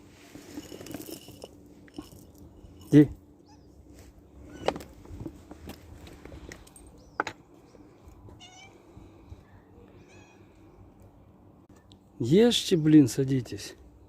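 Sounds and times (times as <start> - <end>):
cats meowing faintly: 8.2 - 10.8.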